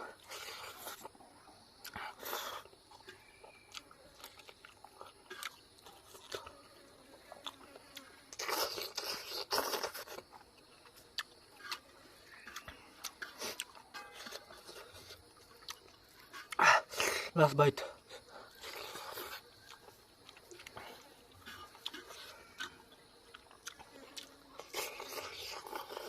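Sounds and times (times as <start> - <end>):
person chewing and crunching food: 0.0 - 17.3, 18.0 - 26.0
bite clicks: 18.6 - 26.0.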